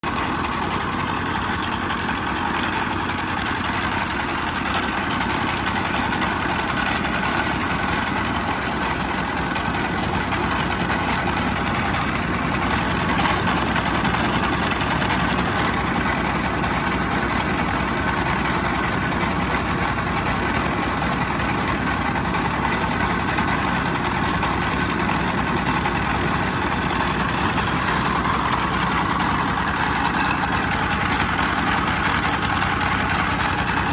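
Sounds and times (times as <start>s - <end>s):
rice milling machine running: 0.0s - 33.9s.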